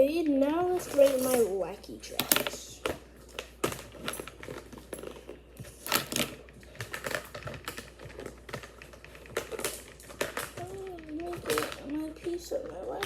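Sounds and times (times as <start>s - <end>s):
plastic fidget toy clicking: 8.6s - 13.0s.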